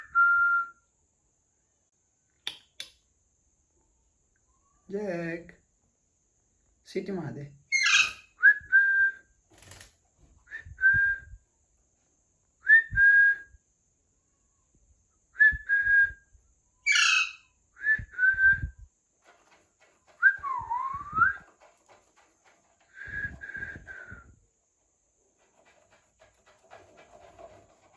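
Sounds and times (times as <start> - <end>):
parakeet chirping: 7.8 - 8.2, 16.9 - 17.4
long dipping whistle: 20.2 - 21.5, 22.9 - 24.3
short rising whistles: 20.2 - 21.5, 22.9 - 24.4.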